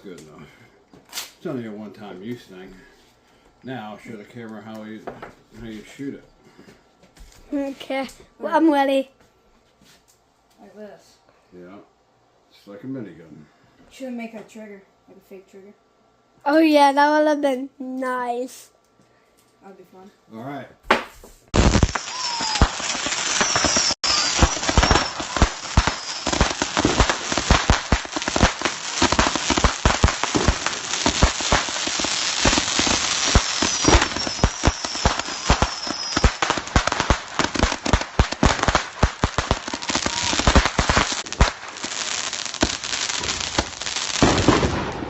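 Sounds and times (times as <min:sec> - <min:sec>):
roman candles fizzing and popping: 0:21.5 - 0:44.7.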